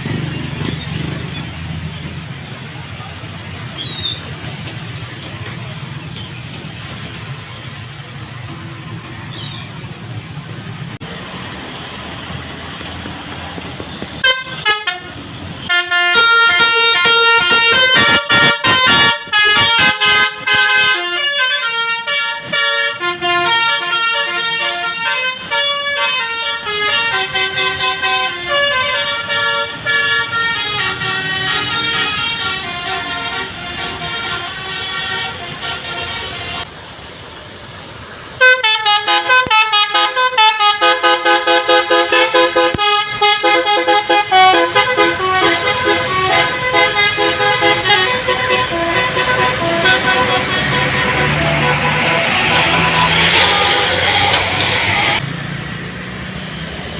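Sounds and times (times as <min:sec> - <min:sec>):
musical air horn melody: 0:15.7 - 0:36.7, 0:38.4 - 0:55.2.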